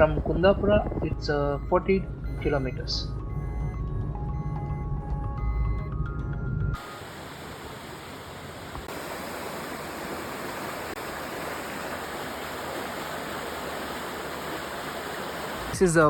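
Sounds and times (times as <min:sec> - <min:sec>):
waterfall rushing: 0:06.8 - 0:15.8.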